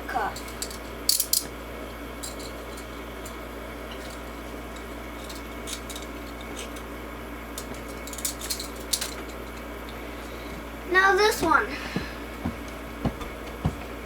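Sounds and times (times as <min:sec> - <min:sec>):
handcuffs clicking and rattling: 0:00.4 - 0:01.5, 0:02.2 - 0:03.4, 0:04.8 - 0:06.9, 0:07.6 - 0:09.6.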